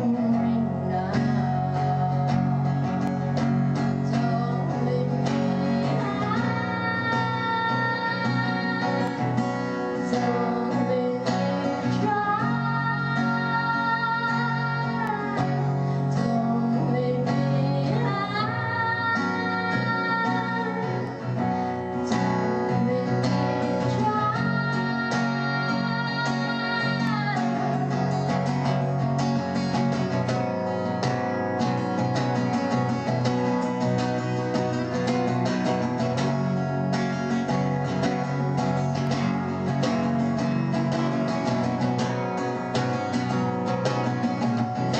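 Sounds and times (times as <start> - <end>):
woman singing: 0.0 - 28.9
guitar accompaniment: 0.0 - 44.9.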